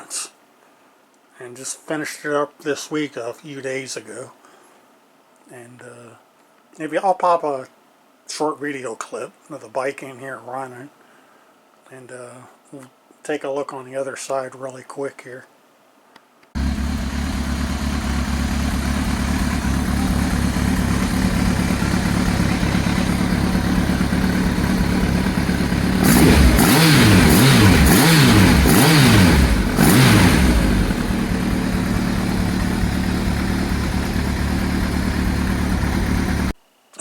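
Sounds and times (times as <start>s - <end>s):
motorcycle engine idling and revving: 16.6s - 36.6s.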